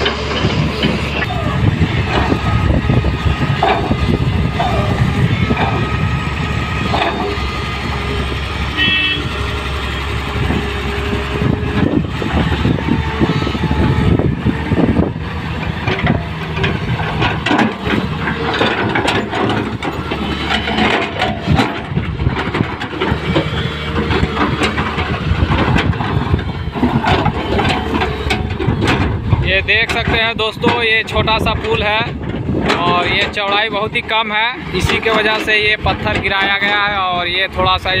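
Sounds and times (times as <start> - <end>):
knocks and clatter: 0.0 - 8.4, 10.3 - 38.0
excavator diesel engine running: 0.0 - 38.0.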